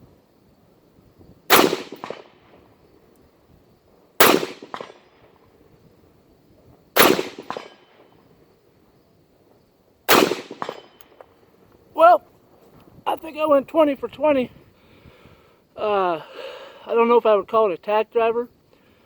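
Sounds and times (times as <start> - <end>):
rifle shots: 1.5 - 2.6, 4.2 - 5.2, 7.0 - 8.1, 10.1 - 11.1
fainter echo crack: 10.1 - 11.3.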